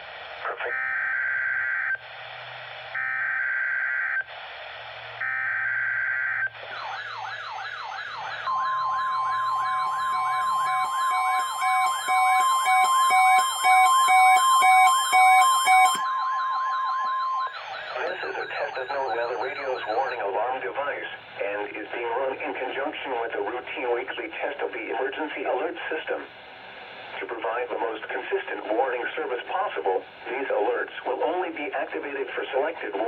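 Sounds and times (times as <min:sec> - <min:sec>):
steady warning alarm tone: 0:05.2 - 0:21.2
siren-like warbling alerts: 0:06.8 - 0:20.3
beeping alerts: 0:08.3 - 0:20.4.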